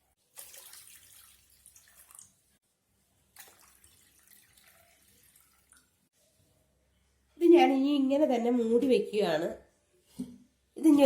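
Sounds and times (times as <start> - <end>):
water pouring into bowl: 0.3 - 2.4, 3.4 - 6.0.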